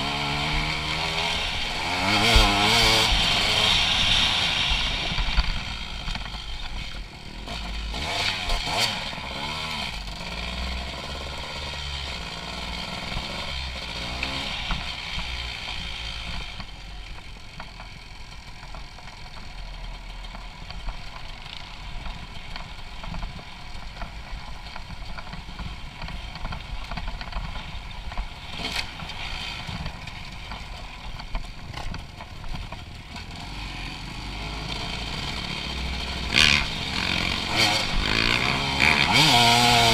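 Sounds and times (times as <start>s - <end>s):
dirt bike engine revving: 0.0s - 16.5s, 28.4s - 30.0s, 33.1s - 39.9s.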